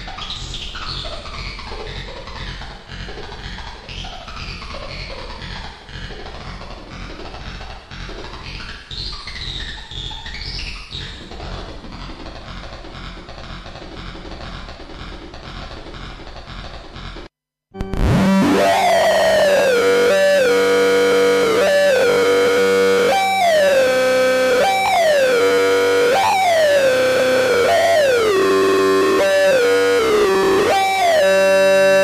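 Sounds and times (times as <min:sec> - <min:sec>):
low synthesizer drone: 0:17.8 - 0:32.0
quieter electronic sound: 0:17.8 - 0:32.0
synthesizer tone jumping and sliding: 0:17.8 - 0:32.0.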